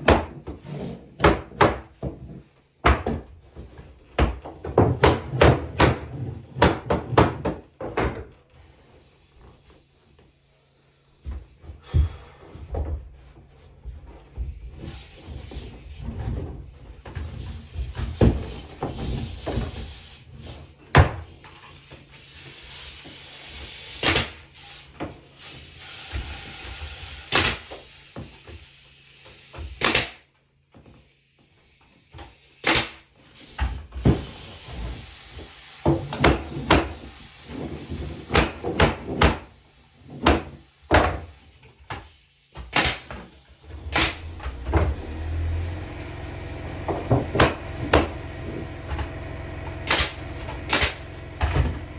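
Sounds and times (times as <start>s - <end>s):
knocks and clunks: 43.8s - 51.9s.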